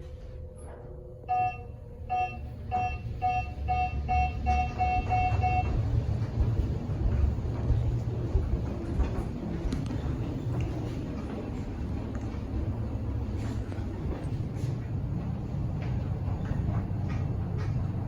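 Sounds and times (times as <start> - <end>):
elevator car rumble: 0.0 - 18.0
elevator floor beeps: 1.2 - 7.8.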